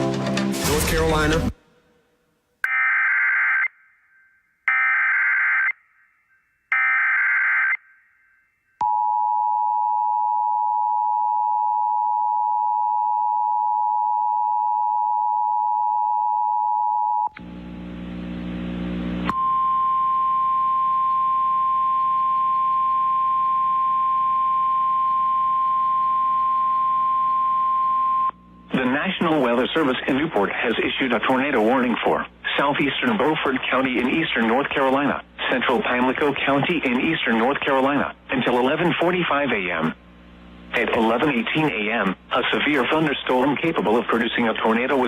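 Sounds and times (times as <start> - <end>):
single-tone warning alarm: 2.7 - 17.3, 19.4 - 28.3
static with low hum: 17.3 - 45.0.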